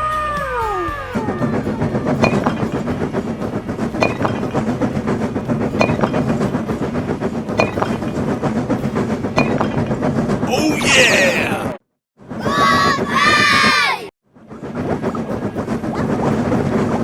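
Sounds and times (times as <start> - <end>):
train rumbling on rails: 0.1 - 17.0
sharp clack of wheels: 1.6 - 10.6, 12.5 - 17.0.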